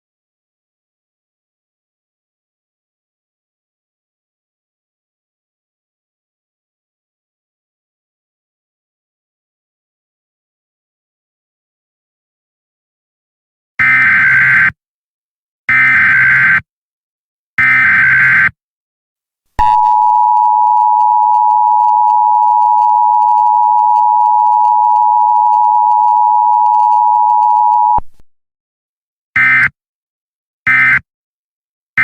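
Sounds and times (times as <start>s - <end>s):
data signal bursts: 19.6s - 28.0s
two-tone attention signal: 19.6s - 28.0s.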